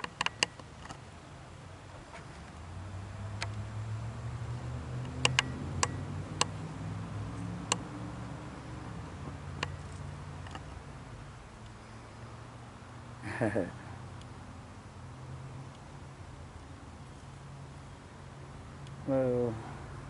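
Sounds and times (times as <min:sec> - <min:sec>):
sharp clicks: 0:00.0 - 0:01.0, 0:05.0 - 0:06.6, 0:07.6 - 0:07.9.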